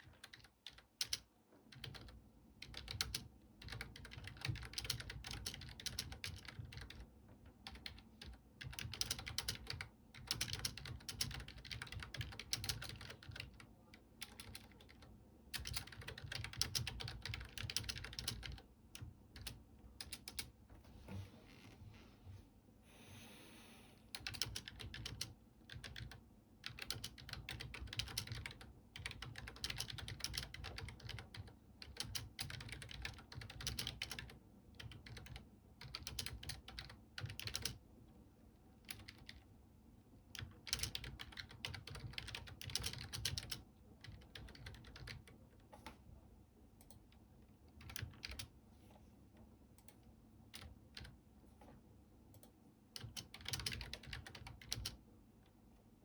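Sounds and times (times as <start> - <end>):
computer keyboard typing: 0.0 - 20.5, 24.2 - 37.8, 38.8 - 39.4, 40.4 - 46.0, 47.7 - 48.5, 49.8 - 51.2, 52.3 - 55.0.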